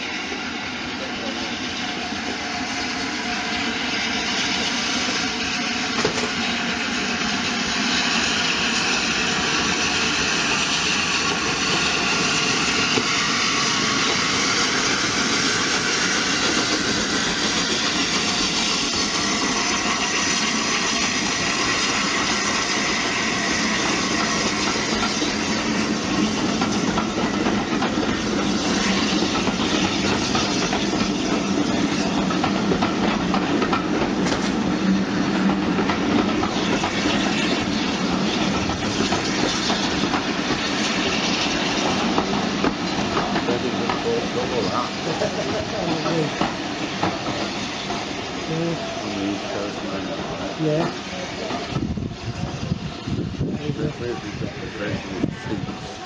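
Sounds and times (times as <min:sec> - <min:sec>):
steam hiss: 0:00.0 - 0:56.0
steam locomotive running: 0:00.0 - 0:56.0
wheels clattering on rails: 0:22.8 - 0:49.0.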